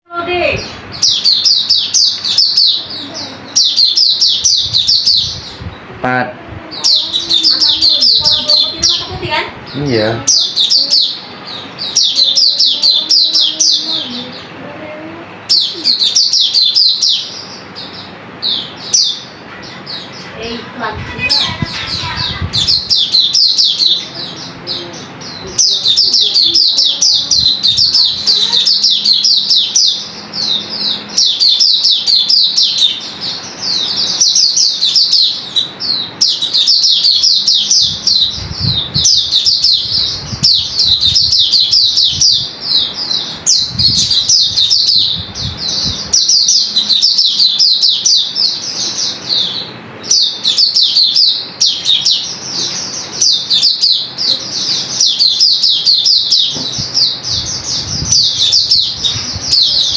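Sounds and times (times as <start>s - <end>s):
bird twittering song: 0.1s - 59.9s.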